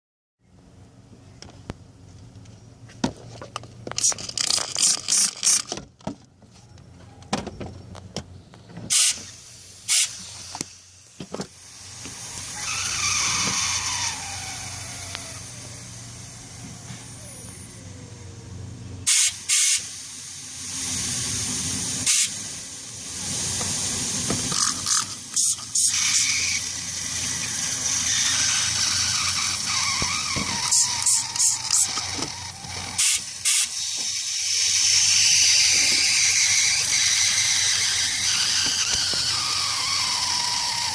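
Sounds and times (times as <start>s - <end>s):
short sharp hisses: 8.9s - 16.1s, 19.1s - 31.8s, 33.0s - 40.0s
car engine idling: 9.3s - 40.9s.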